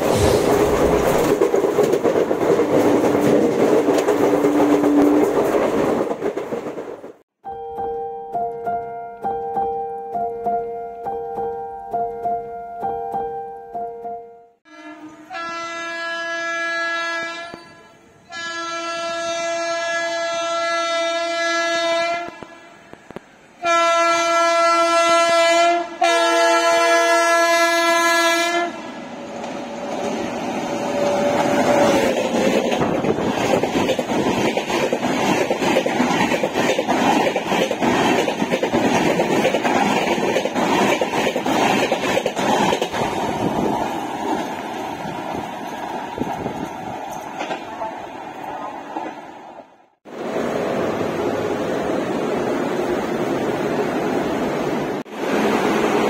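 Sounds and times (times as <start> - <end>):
train coaches rushing on track: 0.0 - 7.2, 22.9 - 56.0
train horn blasts: 14.6 - 28.9.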